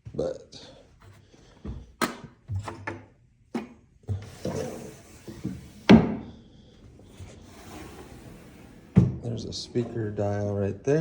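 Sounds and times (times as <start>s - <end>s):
wooden cabinet knocks and clunks: 1.6s - 6.3s, 7.1s - 10.6s.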